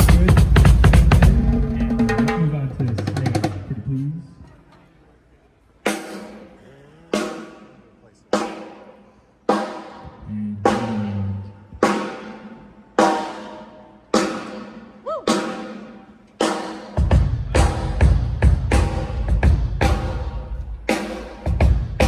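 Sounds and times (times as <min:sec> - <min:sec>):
drum hits ringing out: 0:00.0 - 0:03.8, 0:08.4 - 0:22.0.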